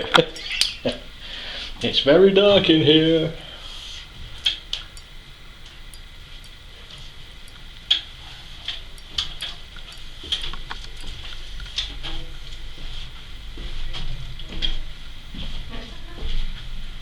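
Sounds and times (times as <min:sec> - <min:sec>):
faint high whine: 0:00.0 - 0:17.0
footsteps down a staircase: 0:11.8 - 0:17.0.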